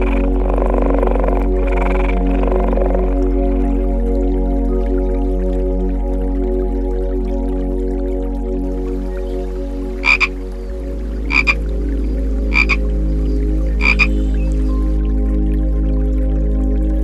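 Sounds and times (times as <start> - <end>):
frog croaking: 0.0 - 3.6, 9.0 - 15.0
soft background music: 0.0 - 17.0.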